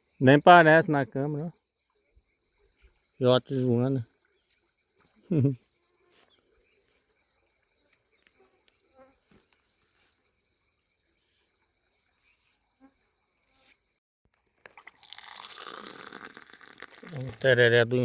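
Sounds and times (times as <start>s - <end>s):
crickets trilling: 0.0s - 18.0s.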